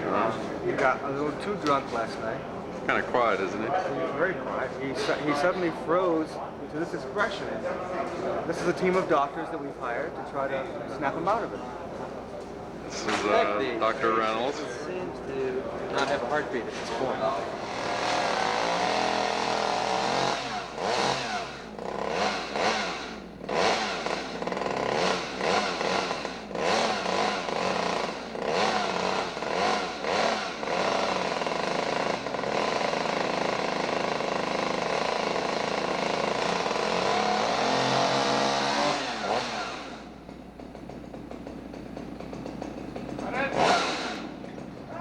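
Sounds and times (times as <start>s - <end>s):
chainsaw engine revving: 16.0s - 45.0s.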